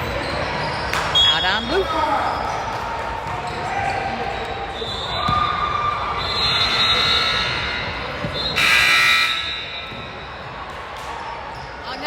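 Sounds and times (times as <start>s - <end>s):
shoe squeaks: 0.0s - 1.8s
shrill whistle blast: 6.2s - 7.7s, 8.3s - 10.4s.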